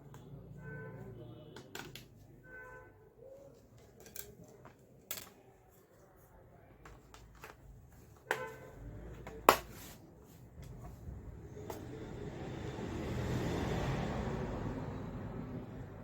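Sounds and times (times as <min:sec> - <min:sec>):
clicks of laptop parts handled: 0:09.2 - 0:10.0.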